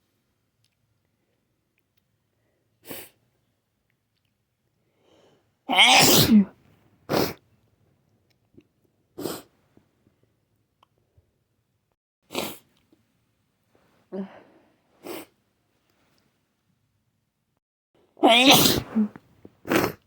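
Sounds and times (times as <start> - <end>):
person sneezing: 5.7 - 7.4, 18.2 - 20.0.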